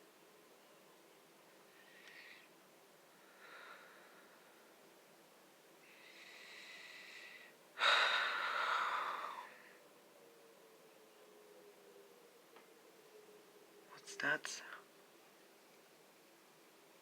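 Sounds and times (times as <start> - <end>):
person breathing: 1.7 - 4.9, 5.8 - 9.8.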